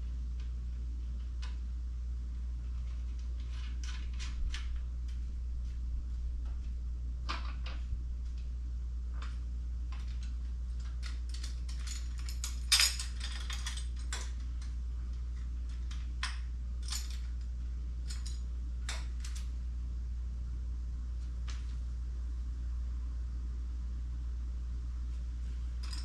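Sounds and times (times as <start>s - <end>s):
low hum: 0.0s - 26.0s
metal hardware clinking: 10.8s - 14.7s, 25.8s - 26.0s
metal parts clattering: 10.8s - 14.7s, 25.8s - 26.0s.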